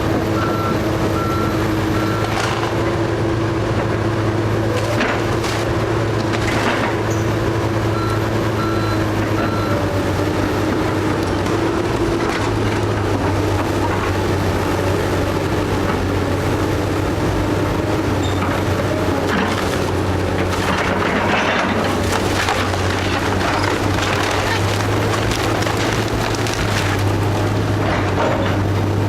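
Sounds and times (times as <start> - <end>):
demolition machinery running: 0.0 - 29.0
reversing alarm beeps: 0.4 - 2.4, 7.9 - 9.9
wood cracking and splintering: 2.1 - 2.8, 4.6 - 7.1, 10.6 - 14.2, 19.0 - 28.7.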